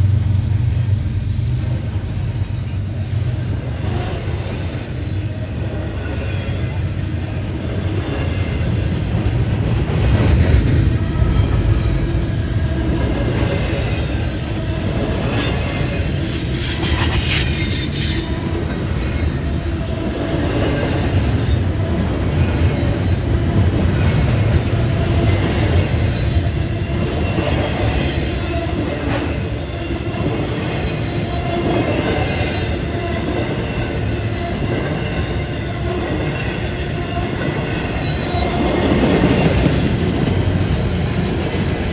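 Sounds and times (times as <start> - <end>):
train cars clacking over rail joints: 7.6 - 41.9
high wheel squeal: 13.9 - 20.2.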